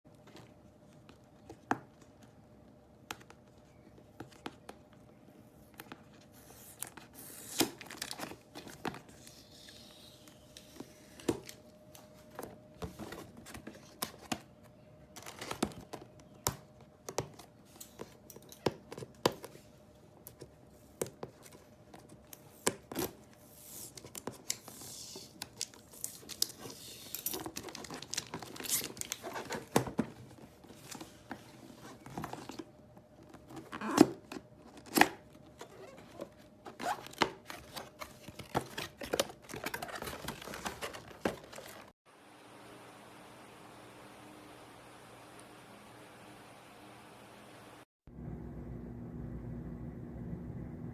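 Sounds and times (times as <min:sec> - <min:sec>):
faint steady hum: 0:00.1 - 0:50.9
packaging crinkling and tearing: 0:25.4 - 0:29.8.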